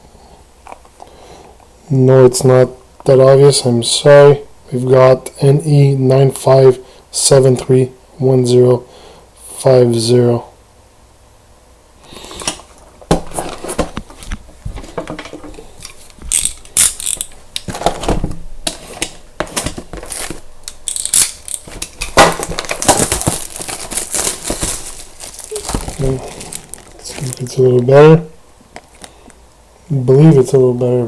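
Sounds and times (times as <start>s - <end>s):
packaging crackling and rustling: 12.4s - 27.9s, 28.7s - 29.4s.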